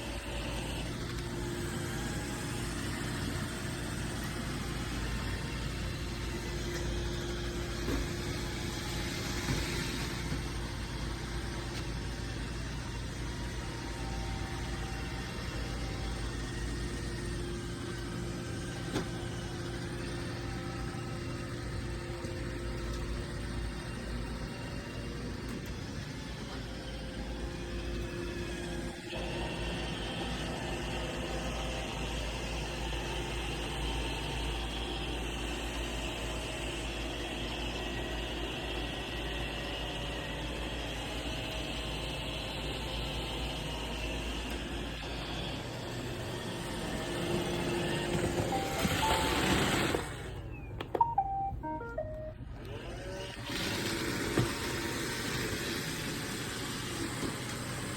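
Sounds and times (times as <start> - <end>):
robot vacuum motor hum: 0.0 - 51.5, 52.1 - 57.9
faint steady whining tones: 0.0 - 53.3.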